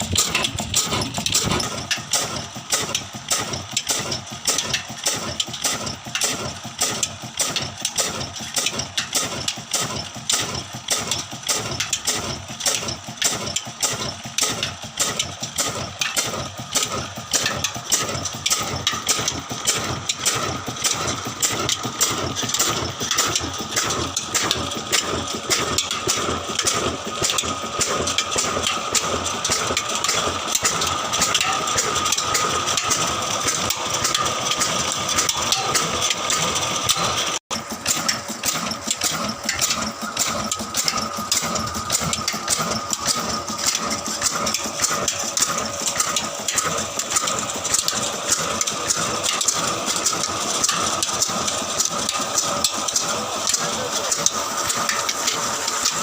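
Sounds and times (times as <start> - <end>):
old engine knocking: 0.0 - 56.0.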